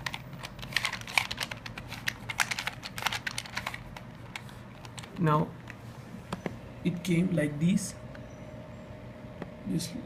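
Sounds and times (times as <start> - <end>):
rubik's cube clicking: 0.0 - 3.8.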